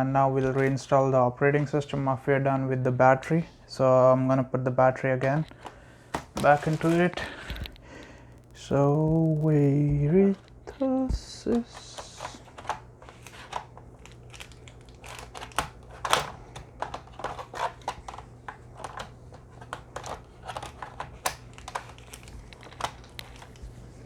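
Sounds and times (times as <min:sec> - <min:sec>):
low steady hum: 0:00.0 - 0:24.0.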